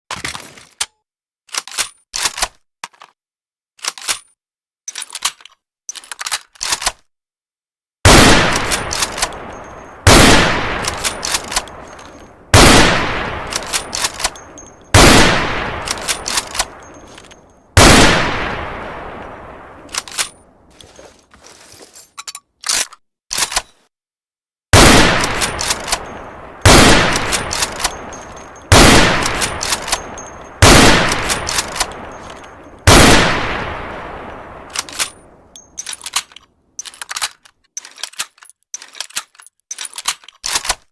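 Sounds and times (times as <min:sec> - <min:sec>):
rifle shots echoing: 0:08.1 - 0:20.0, 0:24.8 - 0:35.4
rifle bolt clicking: 0:10.8 - 0:12.2, 0:27.1 - 0:28.4, 0:31.1 - 0:32.5.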